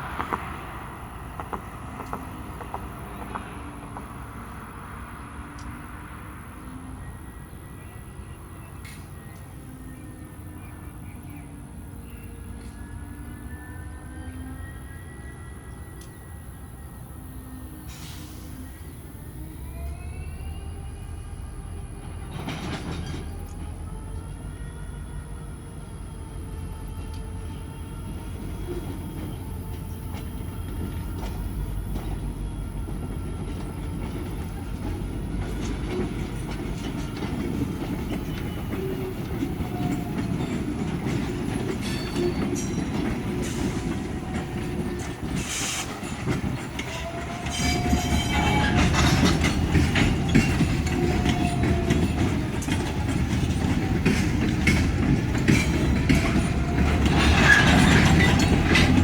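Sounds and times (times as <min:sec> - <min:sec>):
diesel train engine rumble: 0:00.0 - 0:59.0
train wheels clicking over rail joints: 0:01.2 - 0:04.2, 0:22.3 - 0:23.8, 0:28.6 - 0:59.0.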